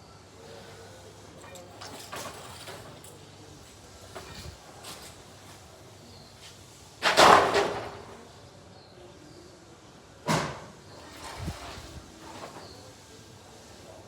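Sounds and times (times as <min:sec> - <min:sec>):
loud bang with rattle: 0:07.0 - 0:08.1.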